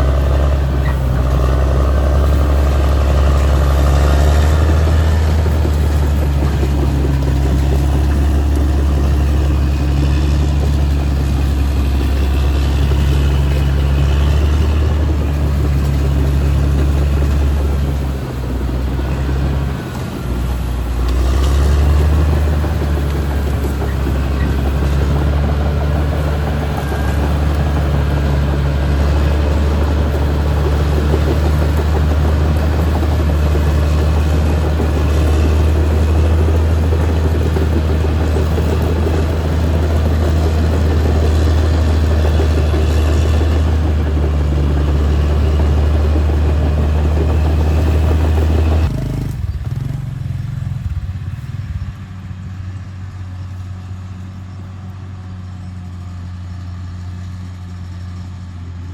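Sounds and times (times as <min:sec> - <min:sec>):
bulldozer diesel engine running: 0:00.0 - 0:58.9.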